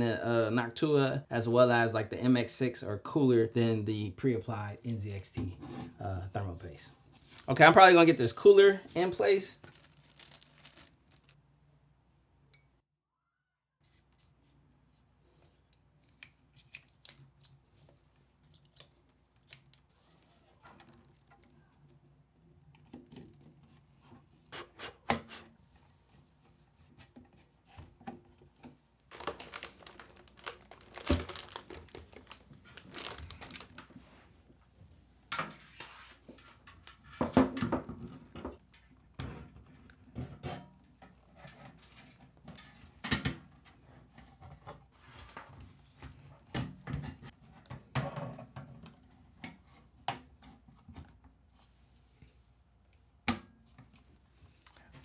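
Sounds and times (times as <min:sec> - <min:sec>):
plastic packaging crinkling: 0:07.3 - 0:11.4, 0:29.1 - 0:34.2.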